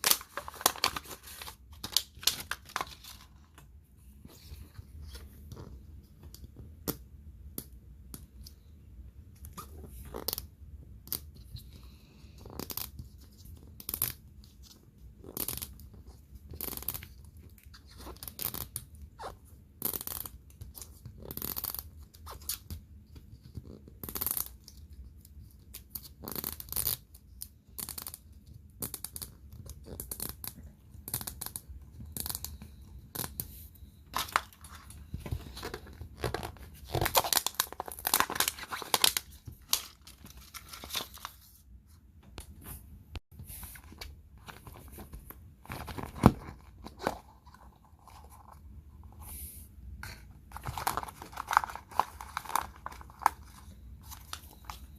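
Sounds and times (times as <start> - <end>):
plastic packaging crinkling: 0.0 - 3.6, 34.2 - 41.6, 50.5 - 54.9.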